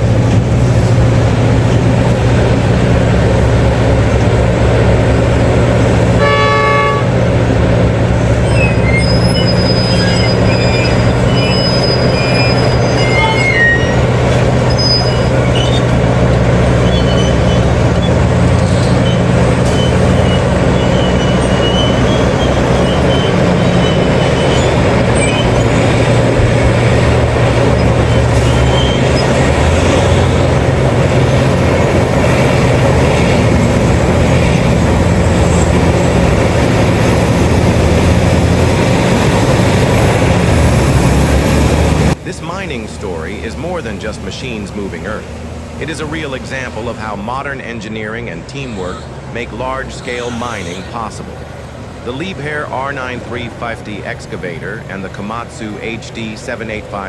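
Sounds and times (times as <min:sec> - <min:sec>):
heavy diesel engines running: 0:00.0 - 0:57.0
short horn toot: 0:06.2 - 0:07.2, 0:11.5 - 0:14.0, 0:48.5 - 0:51.3.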